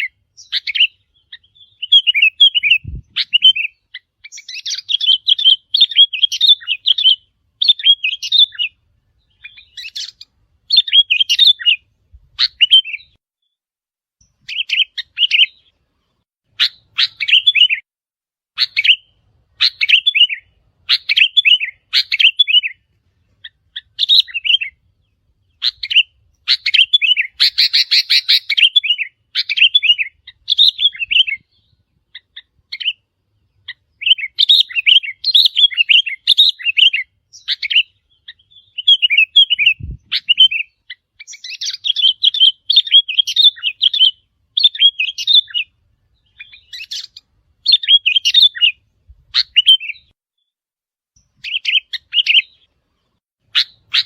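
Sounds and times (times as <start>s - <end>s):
bird chirping: 0.0s - 13.6s, 14.2s - 17.9s, 18.5s - 50.5s, 51.2s - 54.0s.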